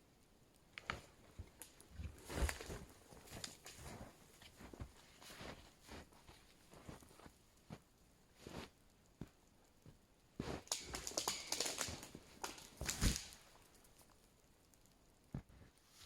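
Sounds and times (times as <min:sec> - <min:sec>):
rustling brush and sticks: 0:00.7 - 0:08.8, 0:10.4 - 0:14.4.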